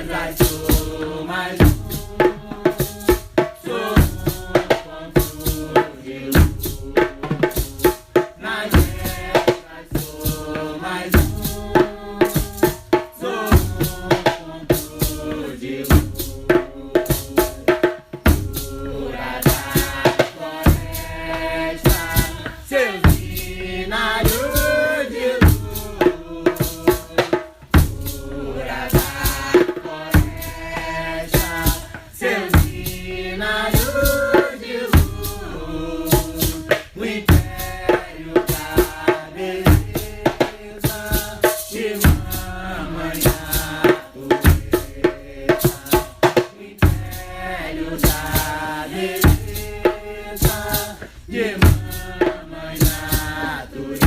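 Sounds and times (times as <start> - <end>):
hand drums beating: 0.0 - 54.0
sharp drum strokes: 0.0 - 54.0
voices singing a chant: 0.0 - 54.0.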